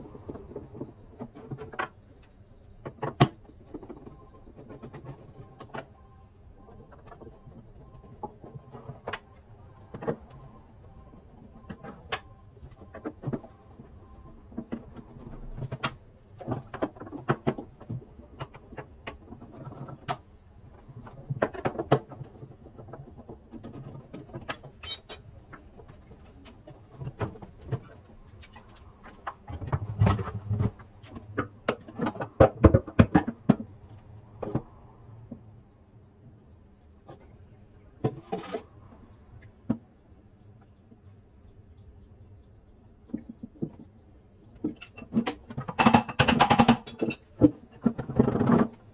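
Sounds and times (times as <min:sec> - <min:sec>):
metallic clinks of tools and parts: 0:24.8 - 0:25.2, 0:45.7 - 0:47.3.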